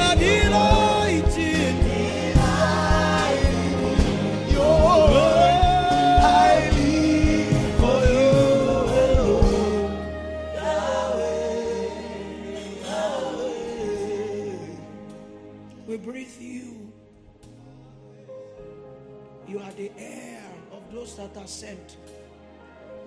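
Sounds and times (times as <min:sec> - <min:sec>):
band with bass and drums: 0:00.0 - 0:10.8
choir singing: 0:00.0 - 0:15.8.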